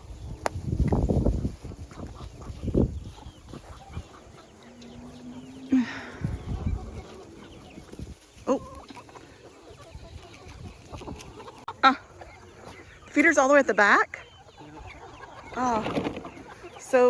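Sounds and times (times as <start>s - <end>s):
chickens clucking: 0.0s - 17.0s
low bumps: 0.4s - 8.2s
chicken squawk: 1.8s - 13.0s, 14.2s - 16.8s.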